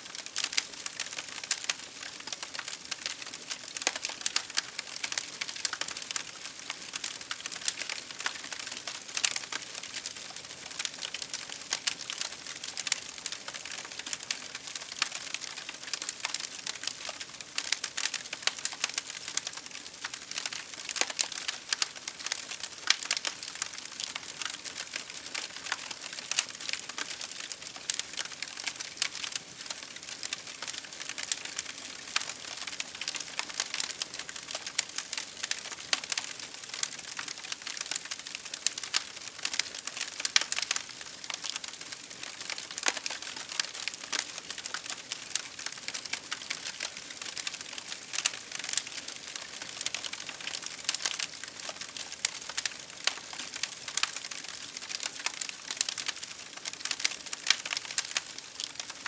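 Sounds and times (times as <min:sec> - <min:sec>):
fire crackling: 0:00.2 - 0:59.0.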